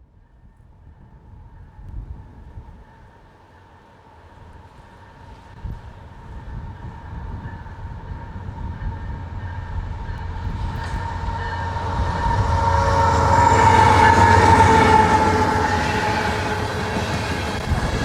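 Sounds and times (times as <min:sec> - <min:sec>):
diesel locomotives rumbling: 0:04.3 - 0:18.0
locomotive air horn: 0:10.9 - 0:18.0.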